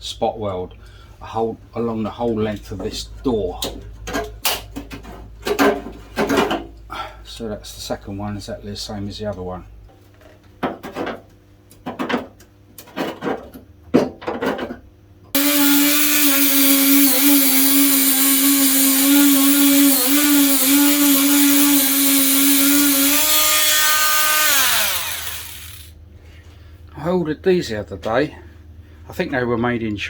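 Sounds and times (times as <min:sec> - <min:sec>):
wire brush power tool whining: 0:15.4 - 0:25.9.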